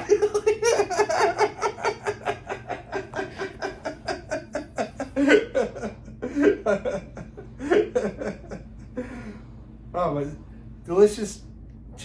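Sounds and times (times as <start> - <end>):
person laughing: 0.0 - 9.4.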